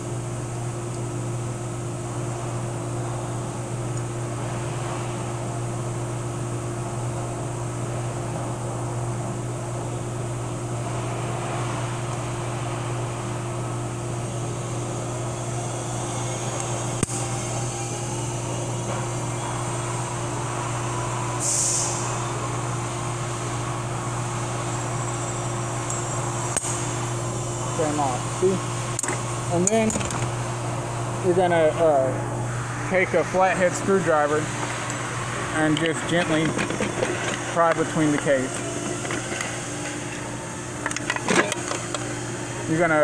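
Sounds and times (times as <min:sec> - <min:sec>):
machine humming: 0:00.0 - 0:43.0
short hiss: 0:21.4 - 0:22.0.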